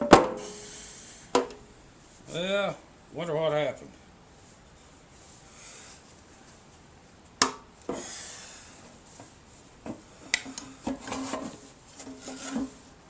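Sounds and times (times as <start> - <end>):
scraping rub: 10.9 - 12.9.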